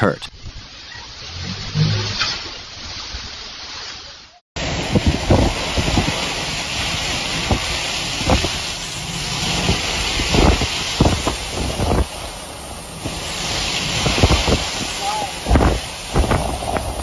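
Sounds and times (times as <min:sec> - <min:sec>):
strong wind gusts: 0:04.6 - 0:17.0
wind buffeting microphone: 0:04.6 - 0:17.0.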